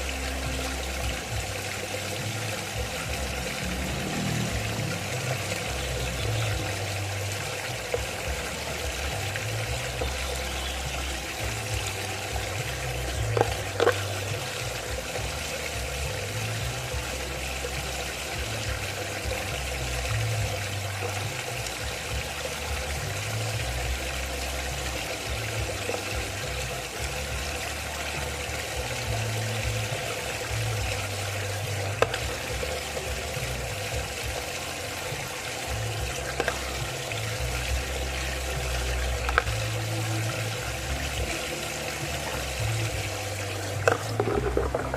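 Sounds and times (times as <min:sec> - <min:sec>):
water swirling in a vortex: 0:00.0 - 0:44.9.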